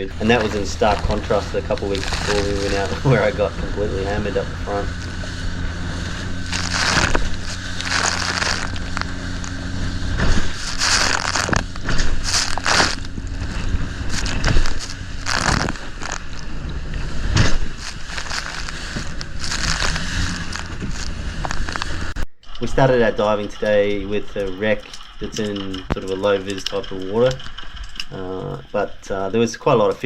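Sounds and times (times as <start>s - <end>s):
motorboat engine humming: 0.0s - 22.2s
wind noise: 0.0s - 22.2s.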